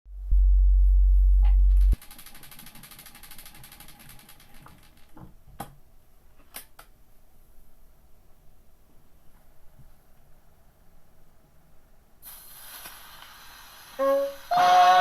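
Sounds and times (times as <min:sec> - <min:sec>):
loud low hum: 0:00.1 - 0:02.0
needle hiss on record: 0:01.8 - 0:15.0.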